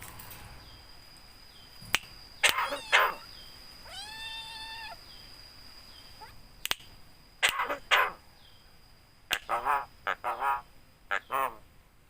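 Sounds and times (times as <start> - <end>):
bird rasping calls: 2.4 - 3.3, 7.4 - 8.2, 9.3 - 11.6
bird clicking: 6.6 - 7.8, 9.3 - 9.6.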